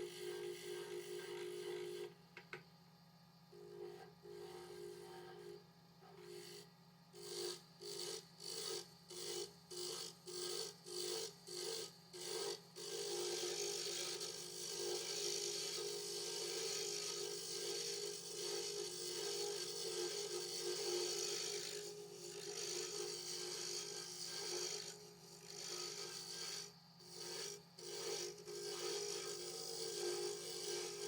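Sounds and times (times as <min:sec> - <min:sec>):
tool scraping spinning wood: 0:21.0 - 0:31.0
lathe machine hum: 0:23.3 - 0:31.0.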